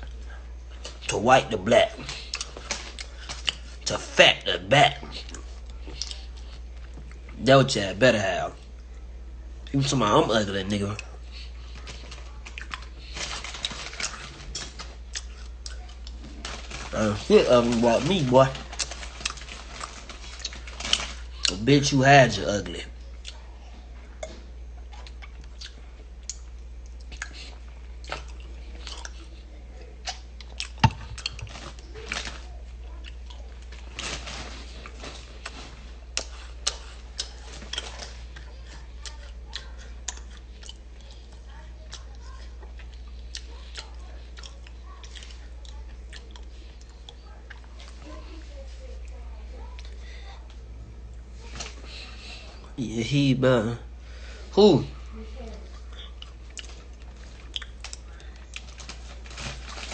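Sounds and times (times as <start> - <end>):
person chewing: 0.0 - 1.1, 1.8 - 4.2, 4.9 - 7.4, 10.9 - 21.6, 23.0 - 23.5, 24.2 - 48.0, 55.7 - 59.9
steady low hum: 0.0 - 59.9.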